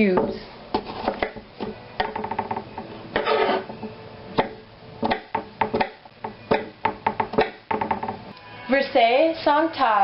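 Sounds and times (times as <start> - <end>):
knife chopping on cutting board: 0.8 - 2.4.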